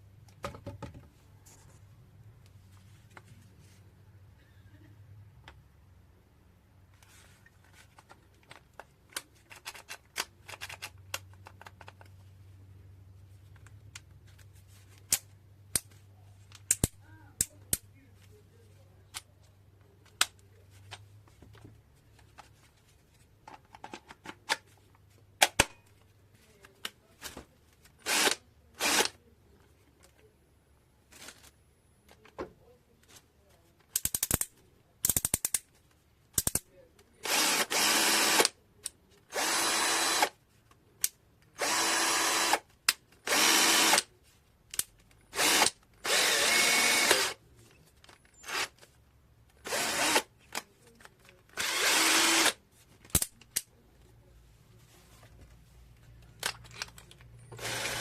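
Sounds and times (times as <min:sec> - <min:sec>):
tool handling clicks: 0:08.0 - 0:12.1, 0:15.0 - 0:17.9, 0:50.0 - 0:53.7
cordless drill motor bursts: 0:28.0 - 0:29.1, 0:37.2 - 0:38.5, 0:39.3 - 0:40.3, 0:41.6 - 0:42.6, 0:43.3 - 0:44.0, 0:45.3 - 0:47.4, 0:48.4 - 0:48.7, 0:49.6 - 0:50.3, 0:51.6 - 0:52.6, 0:57.6 - 0:58.0.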